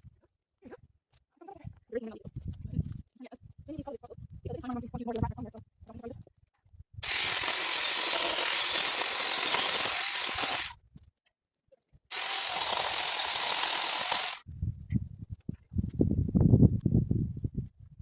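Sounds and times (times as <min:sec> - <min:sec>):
handheld power cutting tool: 0:07.0 - 0:10.8, 0:12.1 - 0:14.4.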